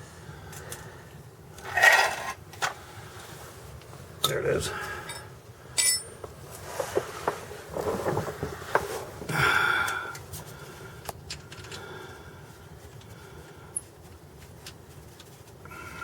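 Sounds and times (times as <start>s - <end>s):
metal scrape: 1.6s - 2.4s
metal tools clinking: 5.0s - 6.2s.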